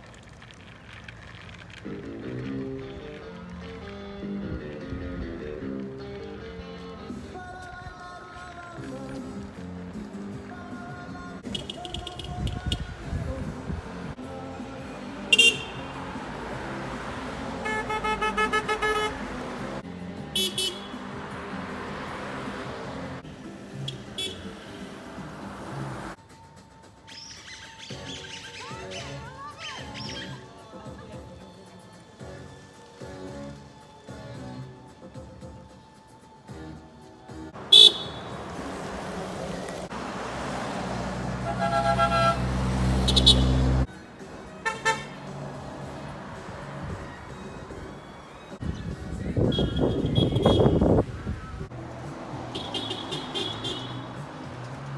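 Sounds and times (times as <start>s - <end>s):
car road noise: 0.0s - 26.2s, 37.4s - 54.9s
traffic: 0.0s - 54.9s
car horn tooting rapidly: 11.4s - 12.9s, 15.2s - 16.0s, 17.6s - 19.6s, 20.3s - 21.1s, 23.8s - 24.7s, 37.6s - 38.5s, 41.4s - 43.8s, 44.6s - 45.3s, 49.4s - 51.0s, 52.5s - 54.2s.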